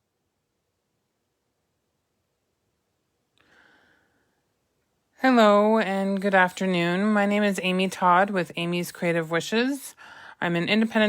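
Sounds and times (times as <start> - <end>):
faint intake of breath: 3.4 - 4.4, 10.0 - 10.4.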